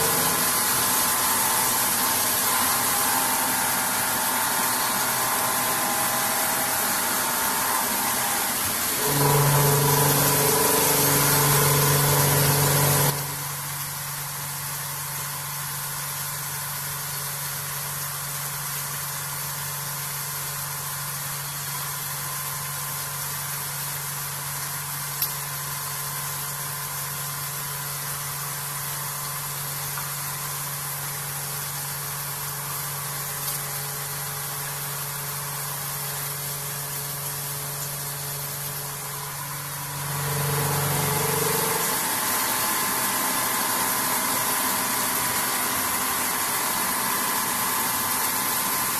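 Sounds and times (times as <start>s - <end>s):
milling machine humming and hissing: 0.0s - 48.9s.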